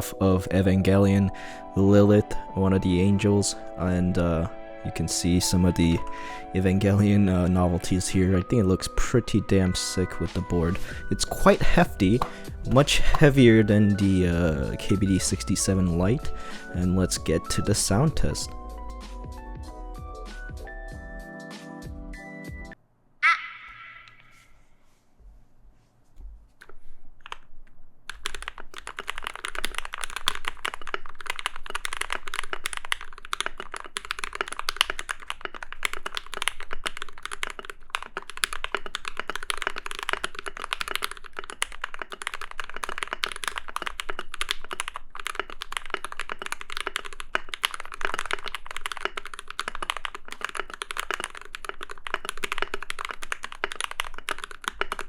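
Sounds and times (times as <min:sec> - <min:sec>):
mechanical keyboard typing: 0:06.8 - 0:18.5, 0:28.1 - 0:55.0.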